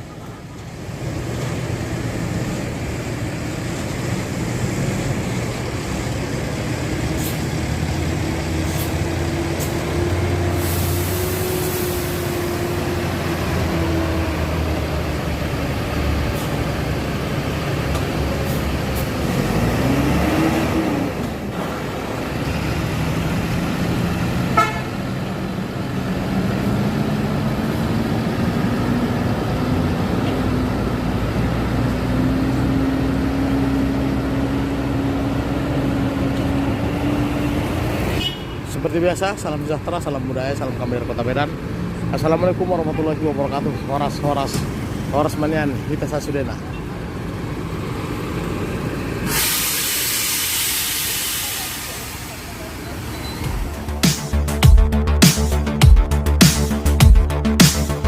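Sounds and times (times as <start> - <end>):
diesel bus engine: 0.0 - 58.0
air hiss: 10.5 - 12.3, 49.2 - 52.5.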